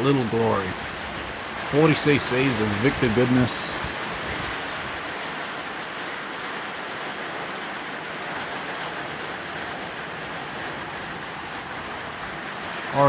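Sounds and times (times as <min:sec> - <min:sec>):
steady hiss: 0:00.0 - 0:05.0.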